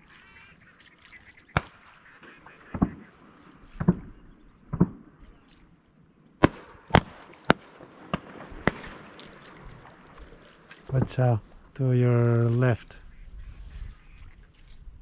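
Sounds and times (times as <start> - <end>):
shotgun shots: 6.4 - 9.2.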